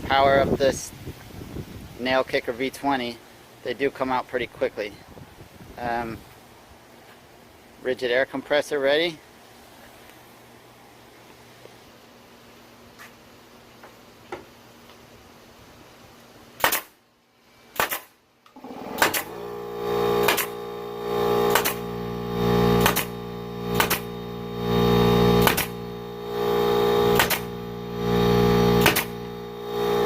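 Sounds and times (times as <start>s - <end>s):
pneumatic tool popping: 16.6s - 17.0s, 17.7s - 30.0s
air compressor running: 18.6s - 30.0s.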